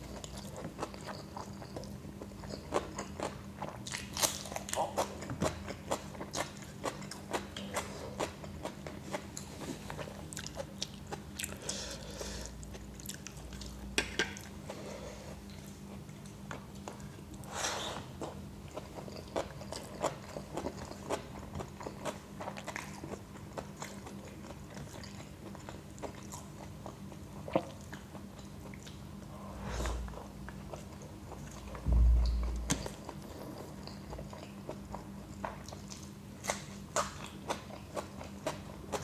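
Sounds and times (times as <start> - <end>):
person chewing food: 0.0 - 39.0
dull low thumps: 31.8 - 33.2.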